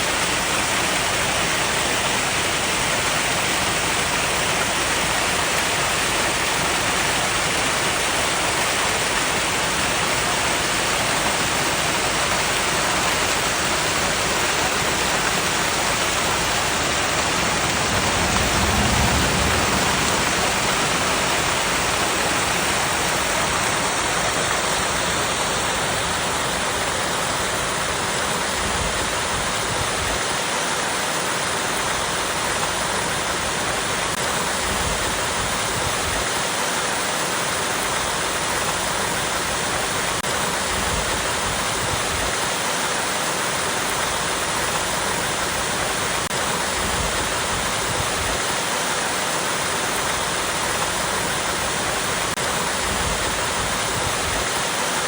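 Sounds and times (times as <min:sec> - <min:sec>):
waterfall rushing over rocks: 0:00.0 - 0:55.0
low rumble: 0:15.8 - 0:24.3.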